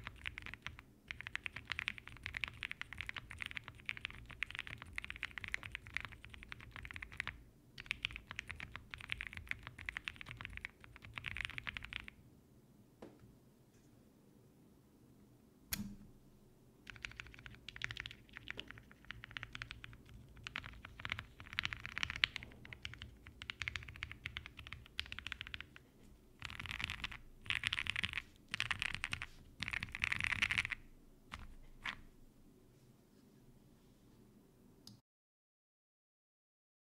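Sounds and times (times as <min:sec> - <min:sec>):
typing on mechanical keyboard: 0:00.0 - 0:12.2, 0:16.9 - 0:25.8, 0:26.4 - 0:32.0.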